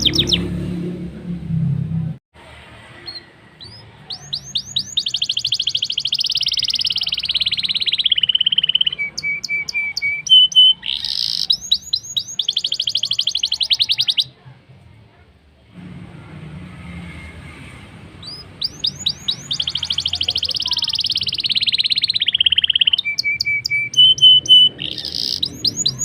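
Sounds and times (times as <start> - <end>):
bird whistled notes: 0.0 - 0.5, 3.1 - 14.3, 18.2 - 26.0
bird singing fast trills: 0.0 - 0.6, 3.0 - 14.3, 18.2 - 26.0.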